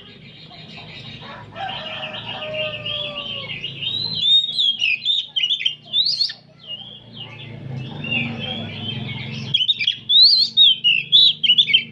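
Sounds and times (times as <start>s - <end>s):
birds singing in chorus: 0.0s - 11.9s.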